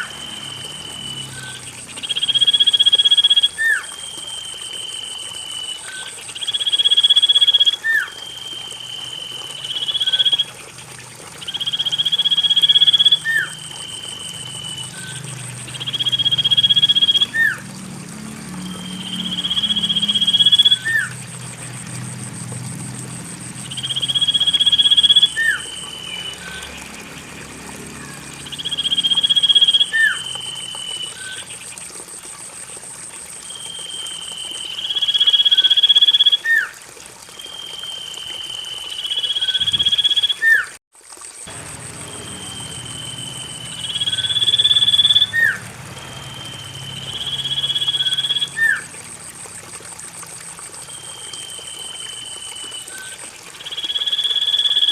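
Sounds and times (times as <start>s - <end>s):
bird song whistle: 0.0s - 10.5s, 11.4s - 17.6s, 18.6s - 21.1s, 23.6s - 26.8s, 28.0s - 31.5s, 33.5s - 36.7s, 37.5s - 40.7s, 42.1s - 48.8s, 50.9s - 54.9s
faint high buzz: 41.5s - 47.8s.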